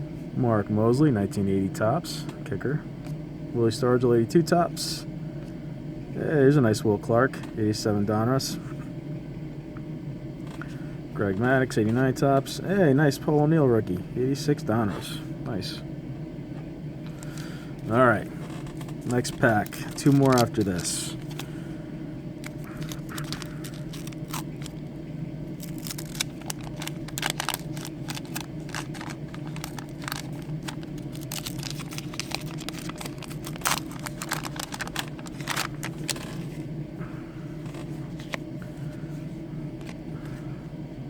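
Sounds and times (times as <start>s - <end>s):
steady low hum: 0.0s - 41.0s
wax paper wrapper tearing: 18.4s - 21.5s, 22.4s - 24.8s, 25.6s - 36.6s.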